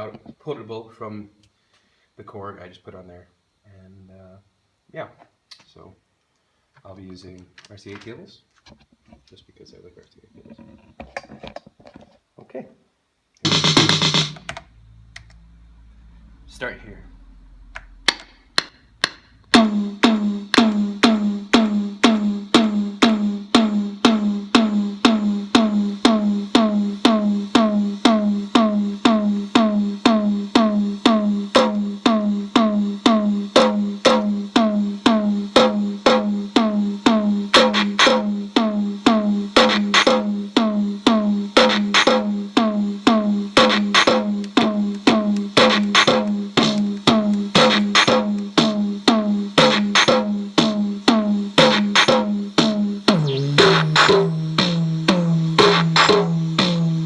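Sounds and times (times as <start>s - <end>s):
drum machine pitched drum hits: 13.5s - 15.1s, 17.8s - 57.0s.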